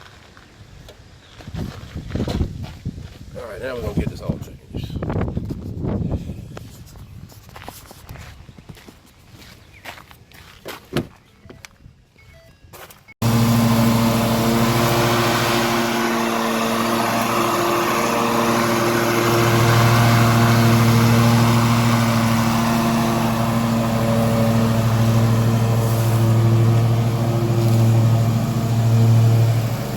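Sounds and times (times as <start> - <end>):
engine running: 13.2 - 29.9.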